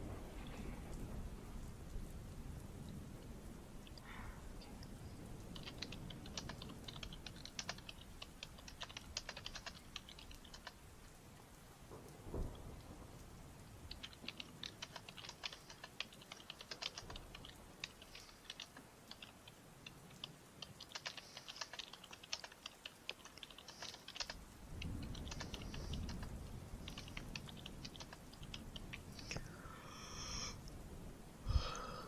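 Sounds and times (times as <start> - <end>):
keyboard key clicks: 5.6 - 10.8, 13.9 - 19.5, 20.2 - 24.4, 25.0 - 29.0.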